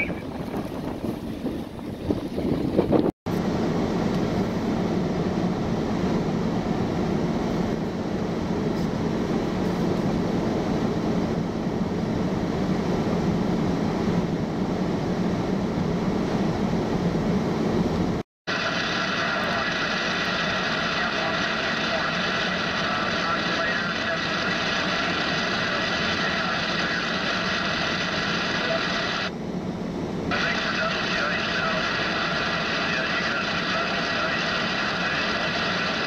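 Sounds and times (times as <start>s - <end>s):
rumbling road noise of vehicle: 0.0s - 28.8s.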